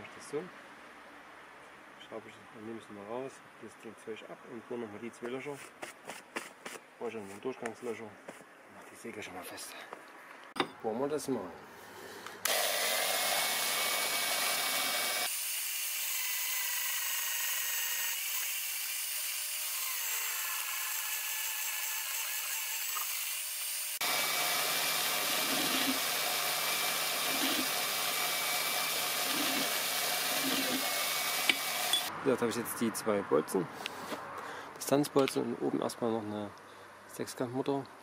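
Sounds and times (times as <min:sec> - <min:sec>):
electric drill whining through steel: 0:12.4 - 0:32.1.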